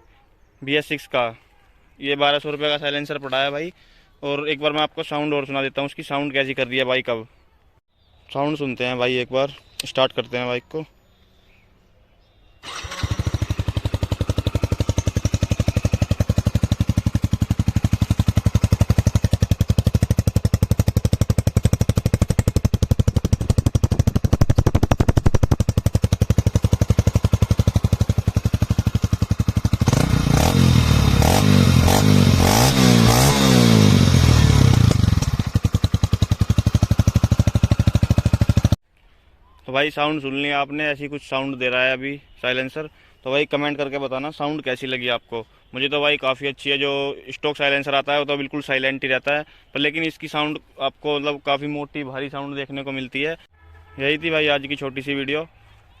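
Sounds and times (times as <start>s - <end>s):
motorcycle engine idling and revving: 12.6s - 38.8s.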